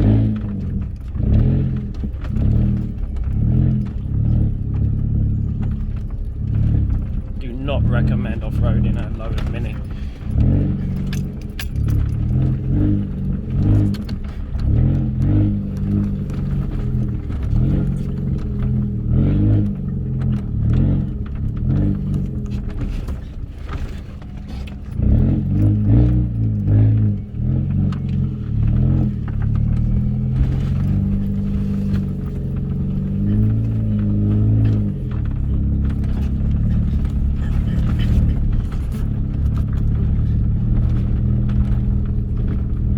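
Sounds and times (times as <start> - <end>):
car engine running: 0.0 - 42.9
car knocking and rattling: 0.0 - 42.9.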